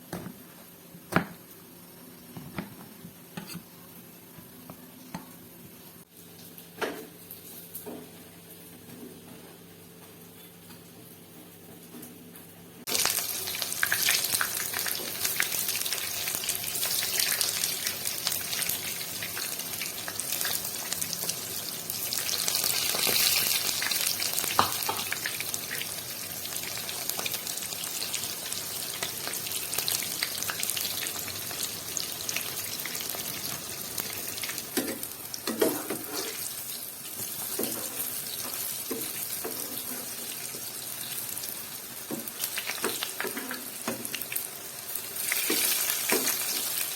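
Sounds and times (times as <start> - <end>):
food sizzling in hot oil: 12.9 - 46.9.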